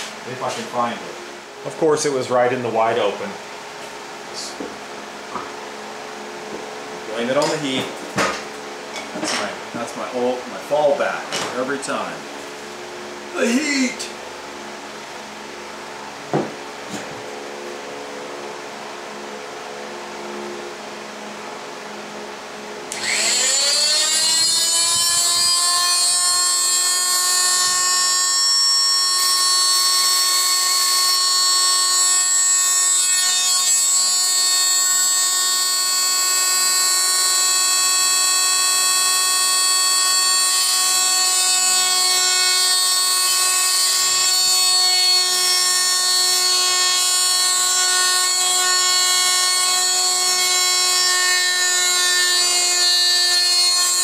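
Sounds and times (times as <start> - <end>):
oscillating multi-tool buzzing: 22.9 - 54.0.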